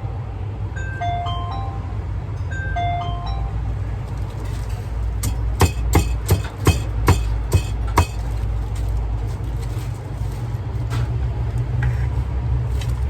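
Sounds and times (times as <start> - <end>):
electronic jingle: 0.0 - 4.1
steady low hum: 0.0 - 9.2
sharp regular knocks: 5.2 - 8.3.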